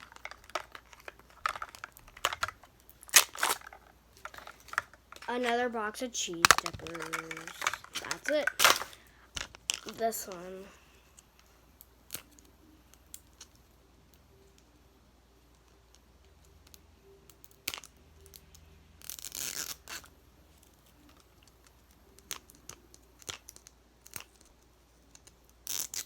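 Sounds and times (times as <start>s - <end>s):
plastic wrapping rustling and tearing: 0.0s - 10.6s, 19.0s - 20.1s, 22.1s - 26.0s.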